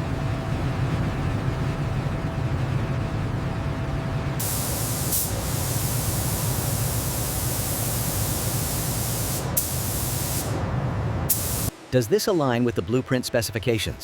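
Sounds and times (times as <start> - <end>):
pressurised spraying hiss: 4.4 - 10.6, 11.3 - 11.8.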